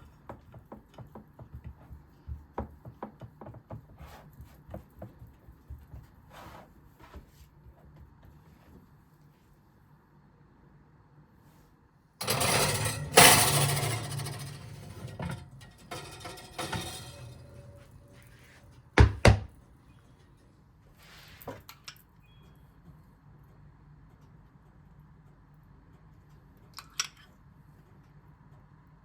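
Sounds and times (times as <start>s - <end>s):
kitchen items clattering: 12.2s - 19.5s
loud clunk: 12.2s - 19.5s.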